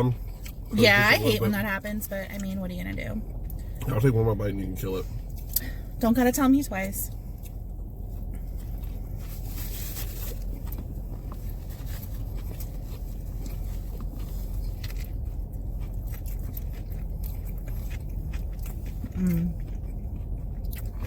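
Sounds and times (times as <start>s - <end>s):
steady low hum: 0.0s - 21.0s
person chewing food: 0.2s - 1.4s, 10.4s - 21.0s
rustling and scraping: 8.2s - 15.2s.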